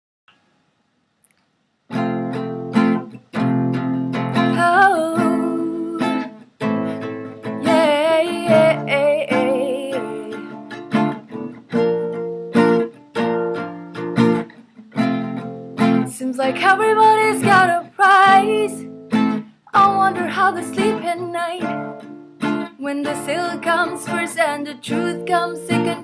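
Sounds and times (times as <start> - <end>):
acoustic guitar strumming: 1.9 - 26.0
woman singing wordlessly: 4.4 - 6.3, 7.6 - 10.6, 16.1 - 18.9, 19.7 - 21.9, 22.7 - 26.0.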